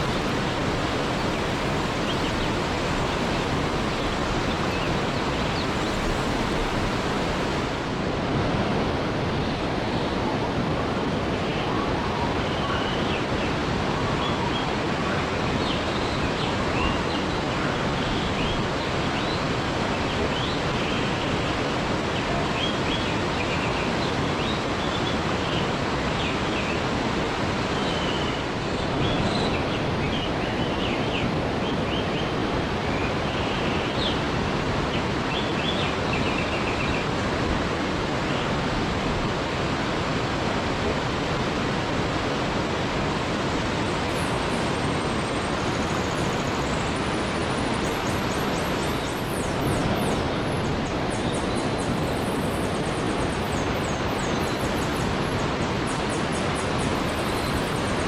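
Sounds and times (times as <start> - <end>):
waterfall rushing: 0.0 - 14.1, 32.4 - 58.0.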